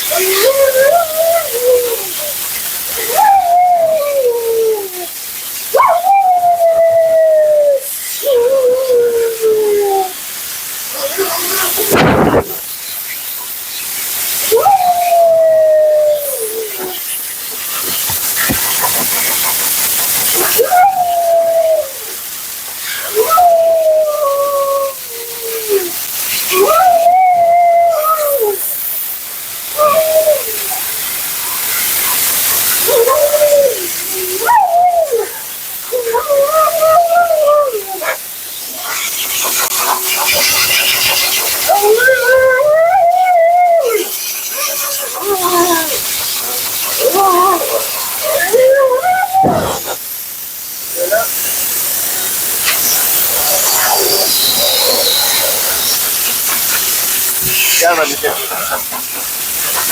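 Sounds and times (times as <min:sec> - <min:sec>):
dog howling woo-calls: 0:00.0 - 0:12.6, 0:14.4 - 0:17.1, 0:20.3 - 0:28.8, 0:29.6 - 0:50.0, 0:50.9 - 0:59.0
steady hiss: 0:00.0 - 0:59.9
dog talking sounds: 0:10.9 - 0:12.6, 0:32.0 - 0:50.1, 0:52.5 - 0:59.9.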